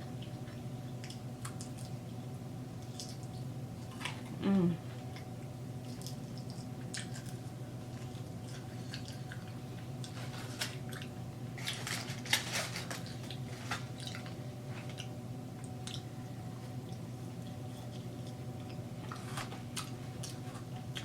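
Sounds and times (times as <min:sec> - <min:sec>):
steady low hum: 0:00.0 - 0:21.0
chewing and biting chicken wings: 0:05.0 - 0:21.0.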